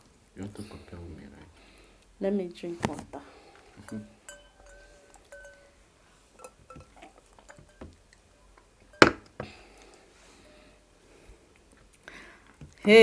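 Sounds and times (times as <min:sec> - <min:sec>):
faint glassy ringing: 0:03.7 - 0:11.2.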